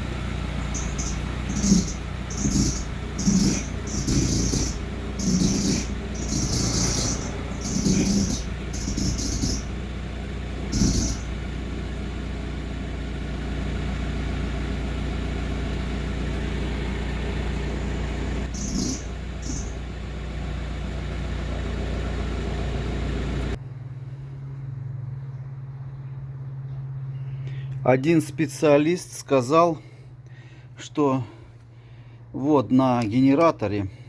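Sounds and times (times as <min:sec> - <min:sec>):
belt squealing: 0:00.0 - 0:09.8, 0:10.6 - 0:11.4, 0:17.8 - 0:19.8
car engine running: 0:00.0 - 0:28.6.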